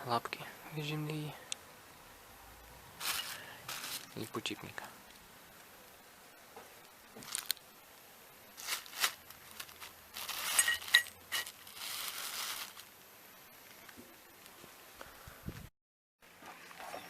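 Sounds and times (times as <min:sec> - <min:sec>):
packaging rustling and crinkling: 0:03.0 - 0:04.3, 0:07.1 - 0:07.6, 0:08.6 - 0:12.9.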